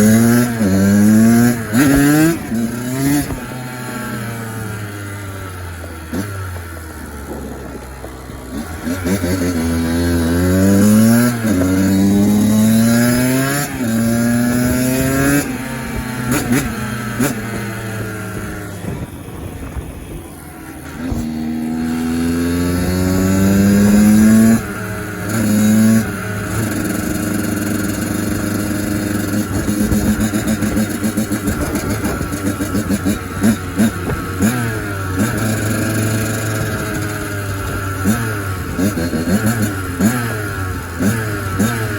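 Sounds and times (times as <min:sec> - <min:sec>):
two-stroke motorcycle engine revving: 0:00.0 - 0:41.9.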